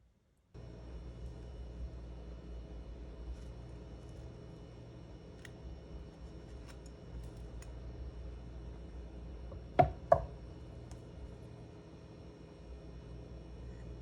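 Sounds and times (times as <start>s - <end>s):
utensil knocking on cookware: 9.6s - 10.4s.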